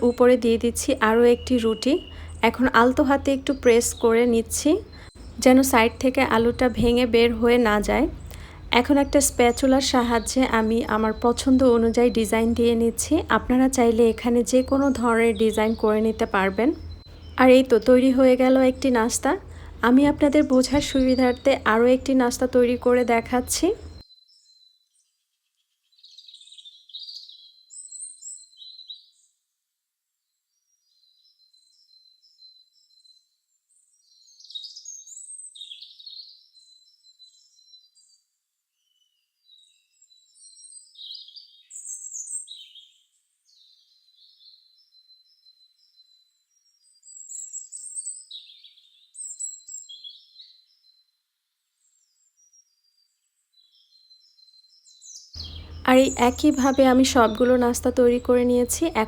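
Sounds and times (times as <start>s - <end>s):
small birds chirping: 0.0s - 29.4s, 30.5s - 59.0s.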